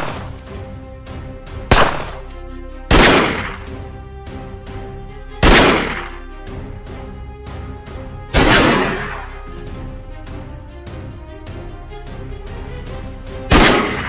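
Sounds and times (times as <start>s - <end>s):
dramatic background music: 0.0s - 14.0s
loud bangs: 2.9s - 3.7s, 5.4s - 6.2s, 13.5s - 14.0s.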